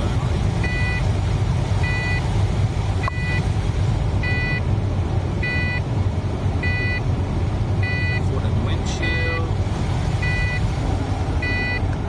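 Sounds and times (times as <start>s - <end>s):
car engine idling: 0.0s - 12.0s
seatbelt warning chime beeping: 0.6s - 1.1s, 1.8s - 2.3s, 3.0s - 3.4s, 4.2s - 4.6s, 5.4s - 5.8s, 6.6s - 7.0s, 7.8s - 8.3s, 10.2s - 10.7s, 11.4s - 11.9s.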